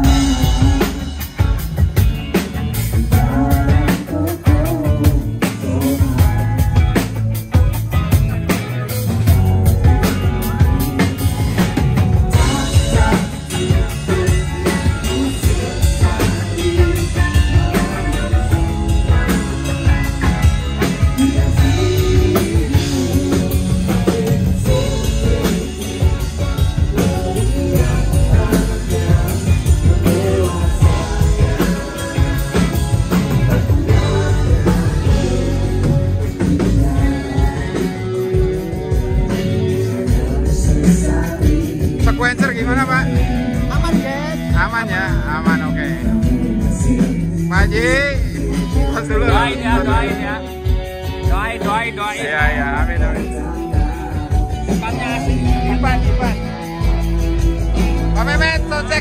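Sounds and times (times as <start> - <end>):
person singing: 0.0 - 59.0
rock band playing: 0.0 - 59.0.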